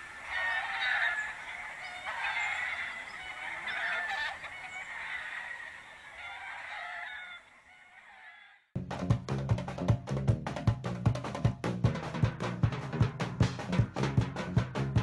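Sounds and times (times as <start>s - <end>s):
flock of birds honking: 0.0s - 8.7s
drum-led music: 8.8s - 15.0s.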